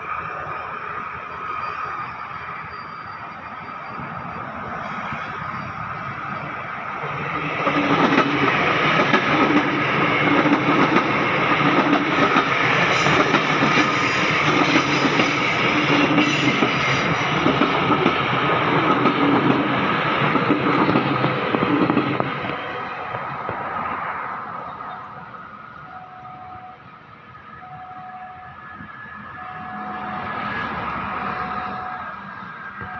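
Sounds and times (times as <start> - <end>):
train wheels rushing on rails: 0.0 - 25.9.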